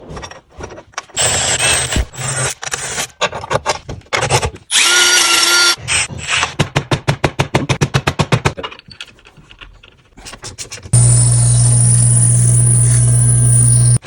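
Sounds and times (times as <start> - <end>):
power tool motor whine: 4.7 - 5.8, 11.0 - 14.0.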